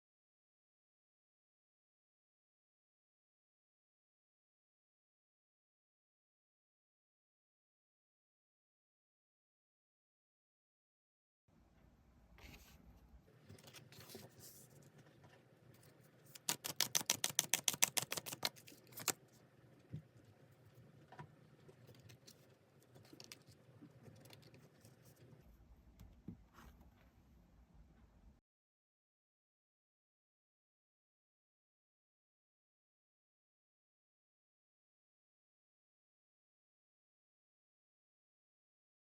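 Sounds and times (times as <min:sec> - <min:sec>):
cards being shuffled: 0:16.3 - 0:19.2
rapid card clicks: 0:16.3 - 0:19.2.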